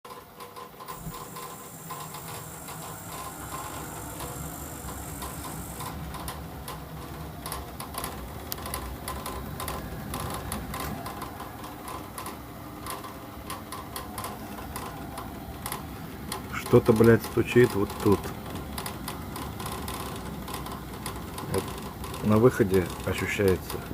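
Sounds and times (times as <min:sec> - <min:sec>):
boiler humming: 0:00.1 - 0:23.9
high hiss: 0:00.9 - 0:06.1.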